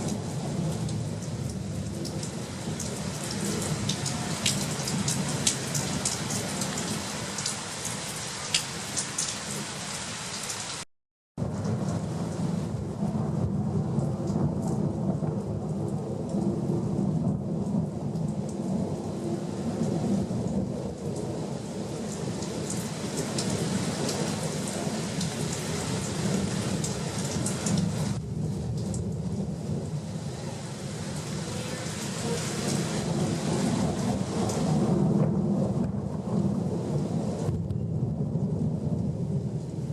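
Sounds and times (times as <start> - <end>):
low rumble of thunder: 0.0 - 7.0, 11.4 - 39.9
heavy rain falling: 0.0 - 39.9.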